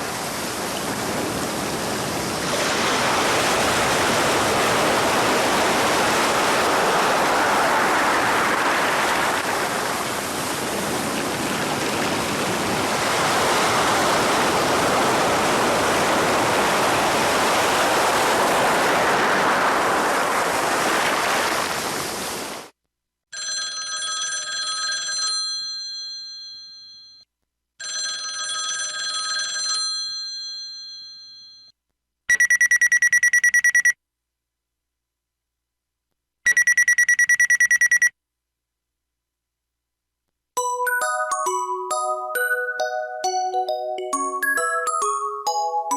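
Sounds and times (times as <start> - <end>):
rapid electronic ring beeps: 32.3 - 34.0, 36.5 - 38.1
ringtone chime phrases: 32.3 - 34.0, 36.5 - 38.1, 40.6 - 45.9.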